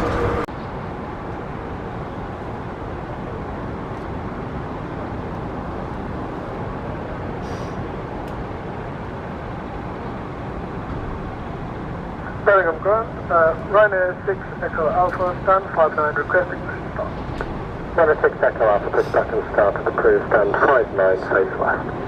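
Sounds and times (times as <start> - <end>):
distant jet engine noise: 0.0 - 22.0
loud steady tones: 9.4 - 22.0.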